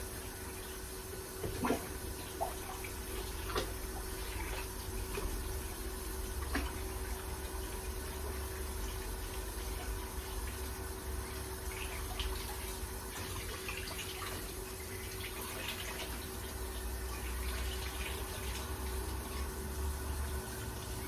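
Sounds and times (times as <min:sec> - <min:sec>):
splashes and knocks under water: 0:01.4 - 0:05.5.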